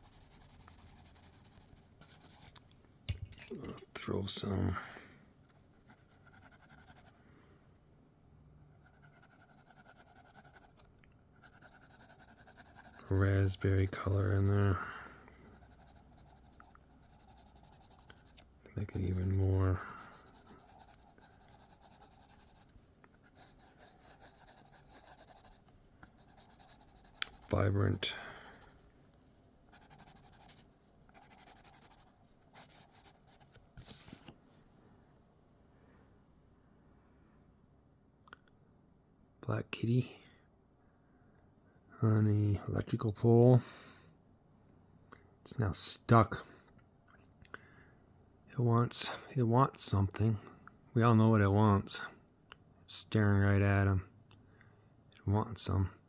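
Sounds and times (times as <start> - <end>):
faint scratching on paper: 0.0 - 2.7, 5.5 - 7.3, 8.6 - 34.4.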